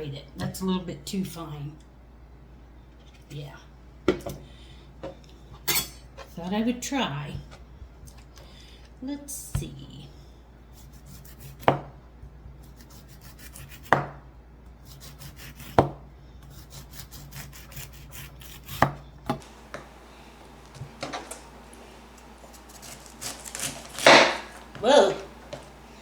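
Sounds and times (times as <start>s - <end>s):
knife shredding cabbage: 10.7s - 11.7s, 12.6s - 14.0s, 14.8s - 15.9s, 16.5s - 25.8s.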